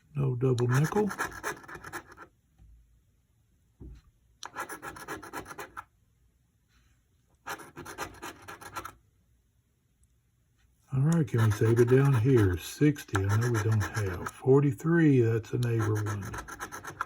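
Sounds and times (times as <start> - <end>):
scratch-off ticket being scratched: 0.5 - 2.3, 4.4 - 5.9, 7.4 - 9.0, 11.1 - 14.4, 15.4 - 17.0.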